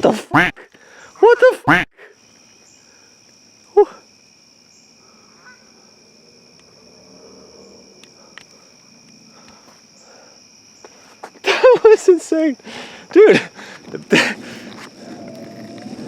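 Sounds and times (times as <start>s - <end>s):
geese honking: 0.3s - 0.6s, 1.6s - 1.9s.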